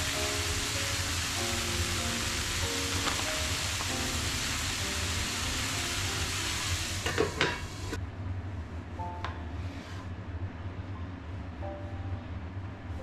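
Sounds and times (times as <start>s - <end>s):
food sizzling in a frying pan: 0.0s - 8.0s
utensil clattering against pan: 7.0s - 7.7s.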